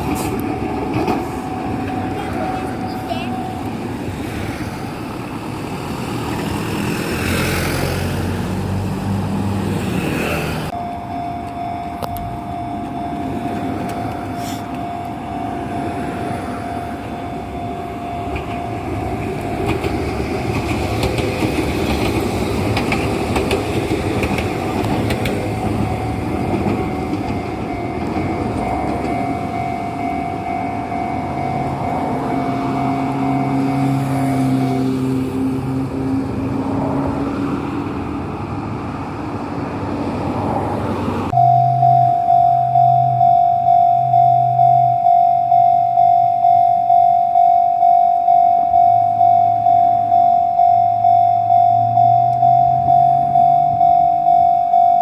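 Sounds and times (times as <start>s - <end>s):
level crossing warning bell: 0.0s - 5.2s, 10.7s - 35.5s, 41.3s - 55.0s
road traffic passing: 0.0s - 55.0s
train rumbling: 0.0s - 55.0s.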